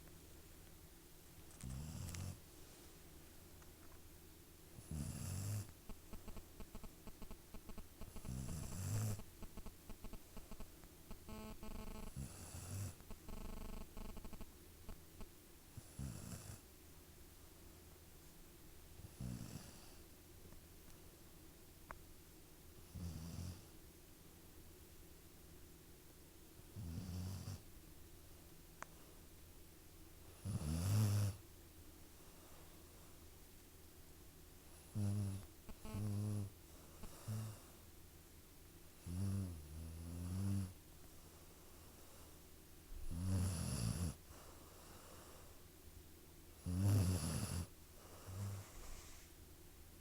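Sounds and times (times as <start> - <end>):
person snoring: 8.1 - 9.2.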